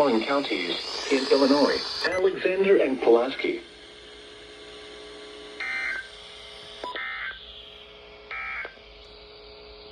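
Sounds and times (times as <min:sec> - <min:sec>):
warbling two-tone data bursts: 0:00.0 - 0:02.9, 0:05.6 - 0:06.1
faint steady hum: 0:00.0 - 0:09.9.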